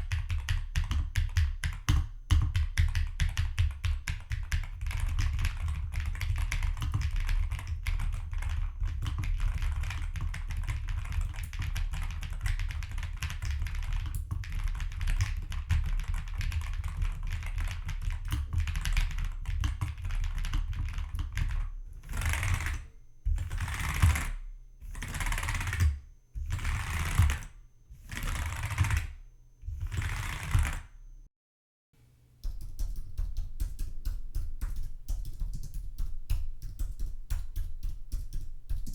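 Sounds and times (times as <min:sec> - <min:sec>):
laptop keyboard typing: 0:00.0 - 0:29.2, 0:29.8 - 0:31.0, 0:32.4 - 0:38.9
mechanical keyboard typing: 0:00.0 - 0:29.2, 0:29.8 - 0:30.9.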